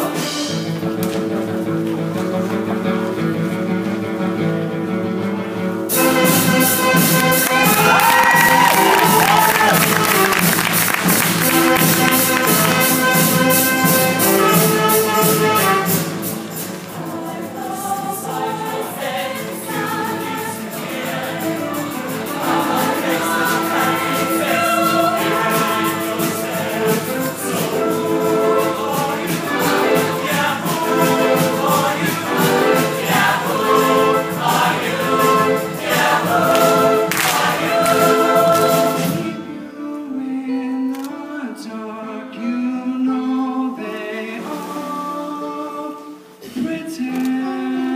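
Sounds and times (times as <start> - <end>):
choir singing in harmony: 0.0 - 1.0, 5.8 - 47.9
steady beat: 5.9 - 39.2.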